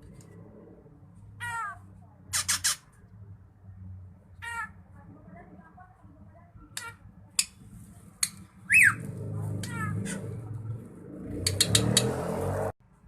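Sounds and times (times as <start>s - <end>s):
low rumbling background noise: 0.0s - 11.8s
bird chips and whistles: 8.7s - 9.0s
bird clicking notes: 11.4s - 12.1s.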